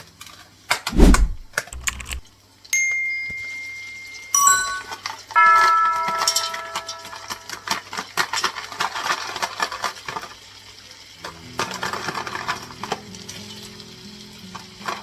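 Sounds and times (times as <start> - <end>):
utensils clinking on dishes: 2.8 - 10.3, 11.2 - 13.9.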